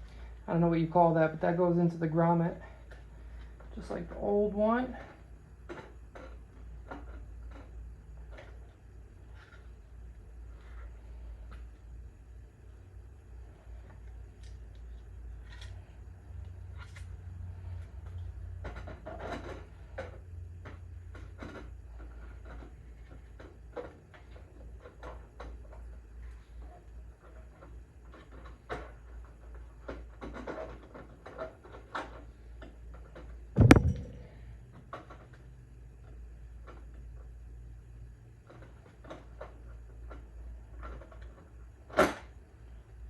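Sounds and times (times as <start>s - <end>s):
loud knock: 33.6s - 34.5s
low hum: 33.6s - 34.8s.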